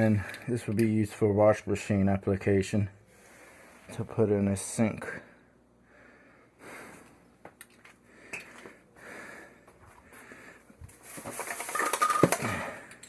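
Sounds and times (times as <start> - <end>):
light clicks of fittings: 0.0 - 1.2.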